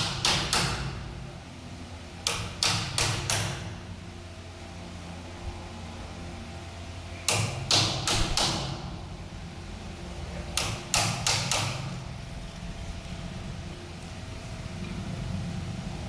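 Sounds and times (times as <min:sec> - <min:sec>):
hammer striking wood: 0:00.0 - 0:01.0, 0:02.3 - 0:03.7, 0:07.3 - 0:08.8, 0:10.6 - 0:11.9
low steady hum: 0:00.0 - 0:16.0.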